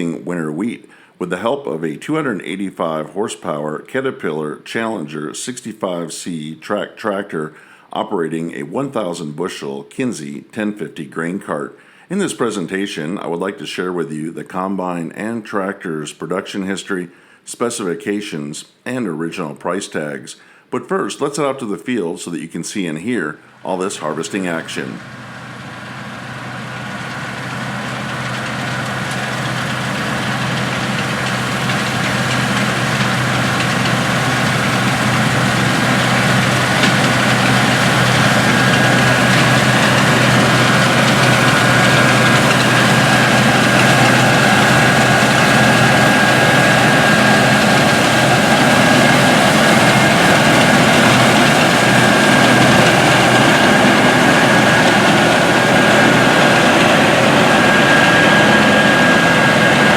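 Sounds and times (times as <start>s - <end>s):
diesel engine drone: 23.5s - 59.9s
thin steady whine: 23.7s - 59.9s.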